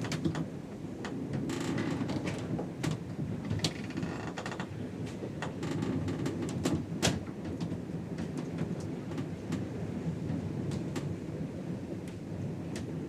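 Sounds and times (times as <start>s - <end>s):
ship low rumble: 0.0s - 13.0s
creaking: 1.5s - 2.4s, 3.5s - 4.7s.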